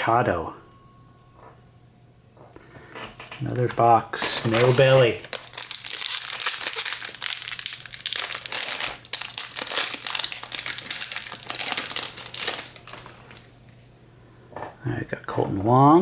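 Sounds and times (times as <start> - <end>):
plastic wrapper crinkling: 3.0 - 13.8.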